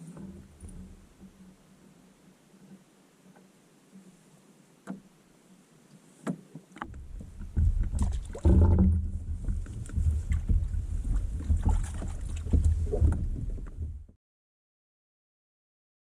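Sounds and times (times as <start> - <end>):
canoe paddling: 0.0 - 14.1
wind rumble on microphone: 6.8 - 14.2.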